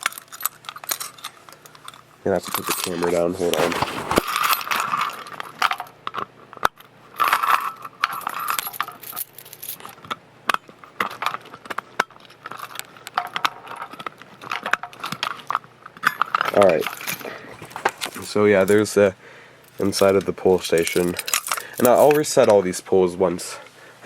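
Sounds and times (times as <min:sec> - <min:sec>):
keys jangling: 0:00.0 - 0:03.2, 0:07.2 - 0:18.9, 0:19.6 - 0:22.3
metal clicks and clinks: 0:00.0 - 0:03.3, 0:04.3 - 0:19.0, 0:19.6 - 0:22.7
camera bumps: 0:02.9 - 0:04.8.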